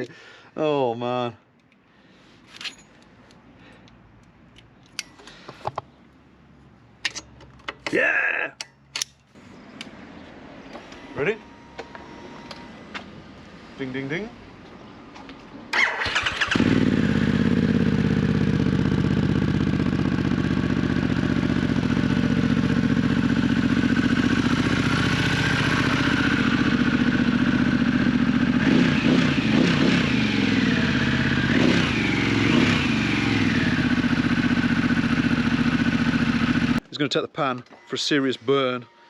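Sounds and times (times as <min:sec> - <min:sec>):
motorcycle engine starting: 0:15.7 - 0:36.8
motorcycle engine idling: 0:16.4 - 0:36.8.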